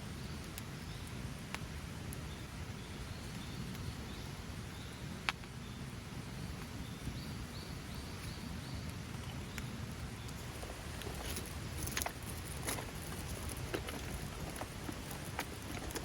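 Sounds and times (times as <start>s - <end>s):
steady low rumble: 9.8s - 16.0s.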